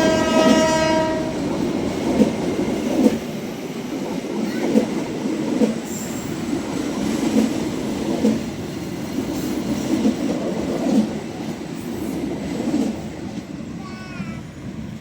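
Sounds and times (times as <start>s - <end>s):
train wheels rumbling on rail: 0.0s - 15.0s.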